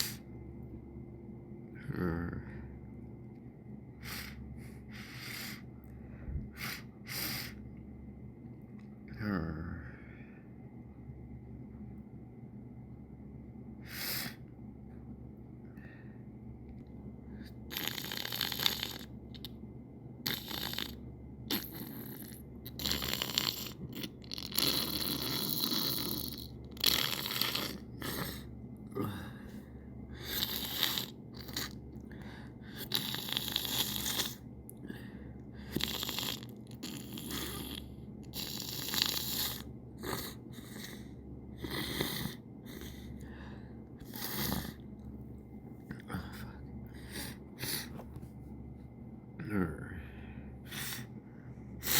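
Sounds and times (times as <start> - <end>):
person sniffling and snorting: 0.0 - 0.3, 4.0 - 5.8, 6.5 - 7.6, 13.8 - 14.5, 17.4 - 19.1, 20.3 - 44.8, 45.9 - 48.2, 50.6 - 51.2.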